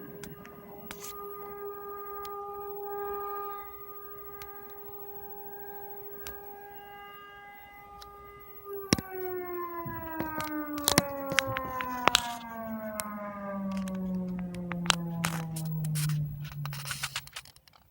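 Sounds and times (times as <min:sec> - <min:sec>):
air raid siren winding down: 0:00.0 - 0:17.6
sharp clicks: 0:06.1 - 0:06.5, 0:08.0 - 0:17.9.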